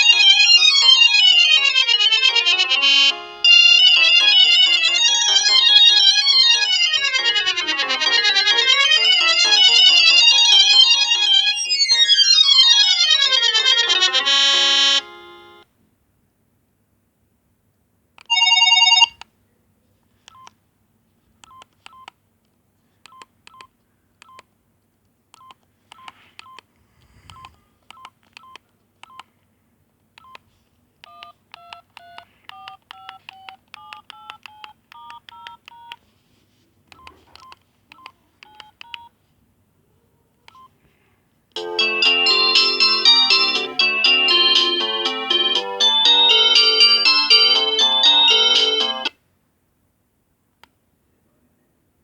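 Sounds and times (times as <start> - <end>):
beeping electronic ringtone: 0.0 - 15.6, 18.3 - 19.2, 41.6 - 49.1
loud phone chime: 0.0 - 15.6, 18.3 - 19.2, 41.6 - 49.1
polyphonic ringtone: 0.0 - 15.6, 18.3 - 19.2, 41.6 - 49.1.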